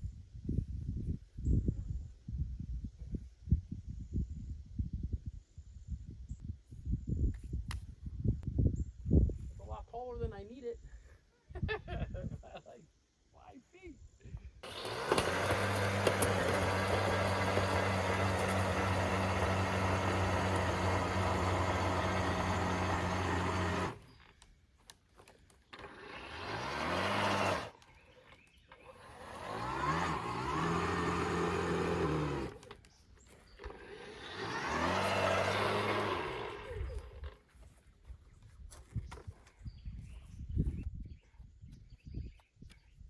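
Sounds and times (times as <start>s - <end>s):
electric power tool motor: 14.6s - 24.1s, 25.7s - 27.9s, 28.7s - 32.8s, 33.4s - 37.4s.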